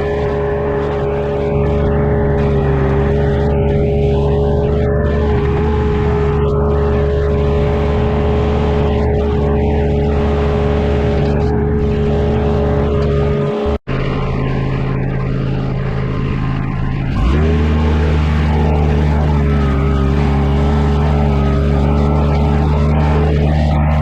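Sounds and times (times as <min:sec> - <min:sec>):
machine engine revving: 0:00.0 - 0:24.0.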